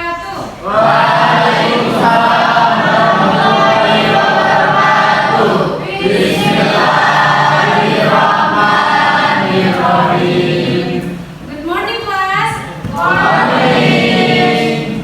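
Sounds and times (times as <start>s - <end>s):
students chanting in unison: 0.6s - 11.4s, 12.7s - 15.0s.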